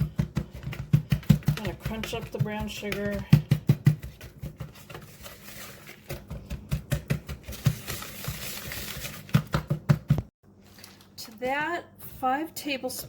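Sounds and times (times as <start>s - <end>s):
whisk scraping a mixing bowl: 0.0s - 9.2s.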